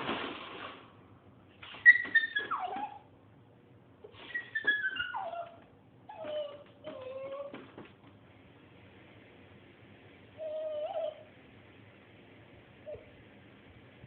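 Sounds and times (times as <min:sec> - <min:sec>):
dog whining: 0:01.6 - 0:03.1, 0:04.0 - 0:07.8, 0:10.4 - 0:11.3, 0:12.8 - 0:13.2.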